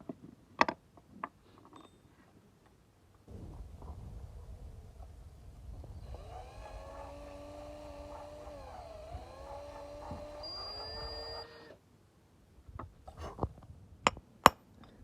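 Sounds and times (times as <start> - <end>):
motor whining over low hum: 3.3 - 11.8.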